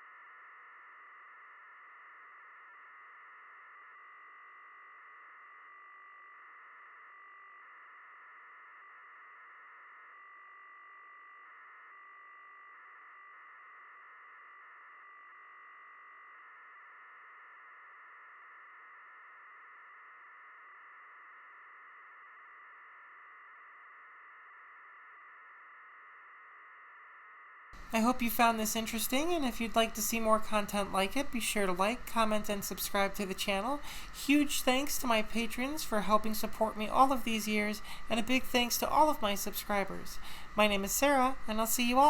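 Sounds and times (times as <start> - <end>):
faint steady tone: 0.0 - 42.0
faint radio hiss: 27.8 - 42.0.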